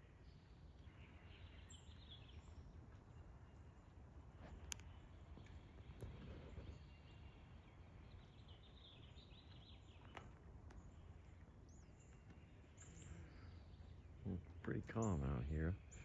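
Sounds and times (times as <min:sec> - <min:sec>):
distant small birds chirping: 0:00.0 - 0:16.0
faint click: 0:04.5 - 0:06.7.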